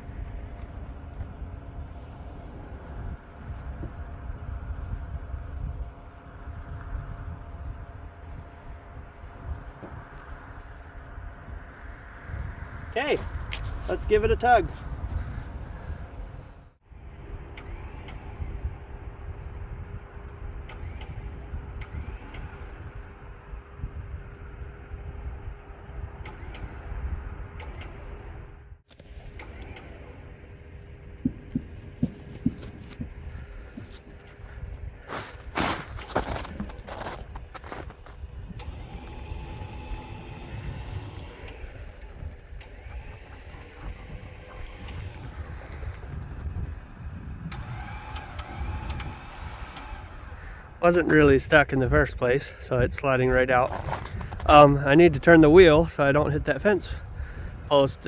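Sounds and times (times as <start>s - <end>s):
electric winch motor whine: 14.2s - 51.2s.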